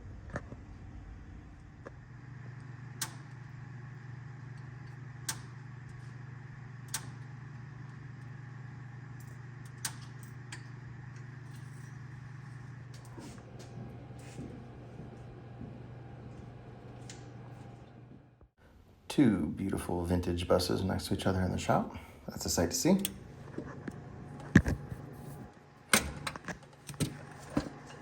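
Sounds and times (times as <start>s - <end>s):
low hum: 0.0s - 26.4s.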